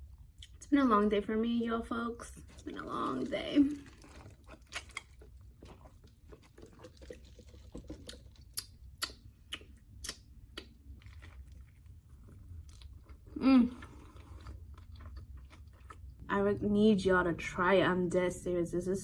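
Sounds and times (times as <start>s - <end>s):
person chewing food: 2.4s - 16.2s.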